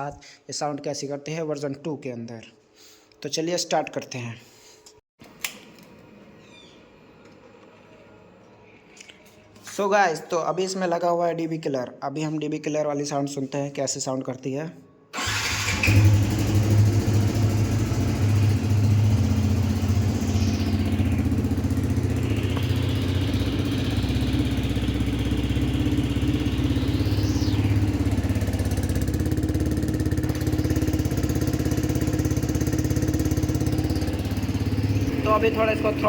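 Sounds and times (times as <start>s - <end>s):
motorcycle engine idling: 15.3s - 36.0s.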